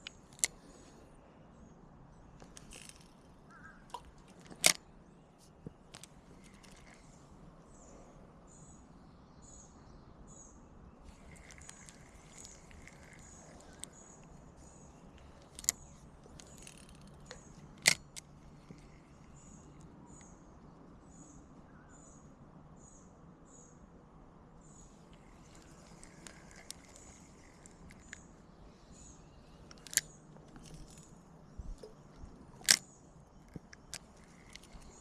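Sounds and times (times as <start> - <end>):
sharp clicks: 0.0 - 0.6, 2.4 - 4.8, 11.1 - 20.3, 25.1 - 28.3, 28.9 - 31.1, 31.7 - 35.0.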